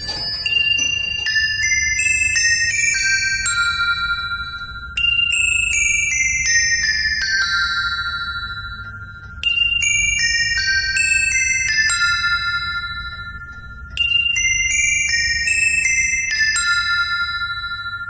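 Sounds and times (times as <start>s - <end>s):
small bells falling run: 0.0s - 3.4s.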